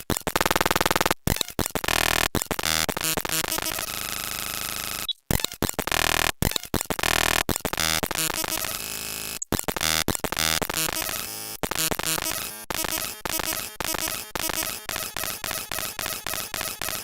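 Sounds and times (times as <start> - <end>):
jumbled buzz of alarm tones: 7.8 - 17.0.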